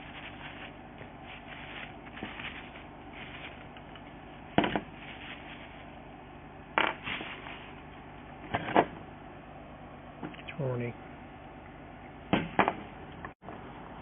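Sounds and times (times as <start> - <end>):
rustling and clattering of packaging: 0.0 - 4.0, 4.6 - 5.9.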